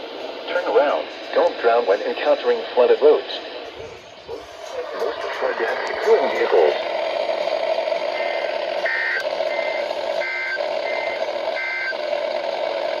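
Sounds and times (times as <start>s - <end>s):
radio hiss: 0.3s - 6.9s.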